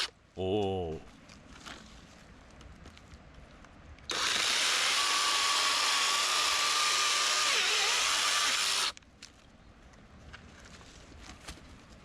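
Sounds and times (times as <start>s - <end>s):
cordless chainsaw whine: 4.1s - 8.9s.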